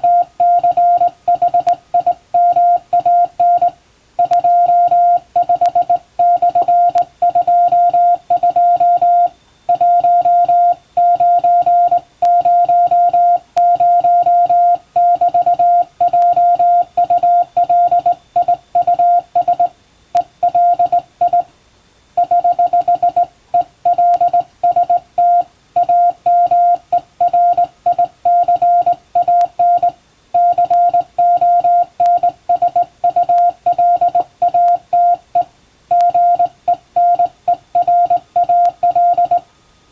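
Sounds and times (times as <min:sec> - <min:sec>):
morse code tone: 0:00.0 - 0:21.5, 0:22.2 - 0:39.4.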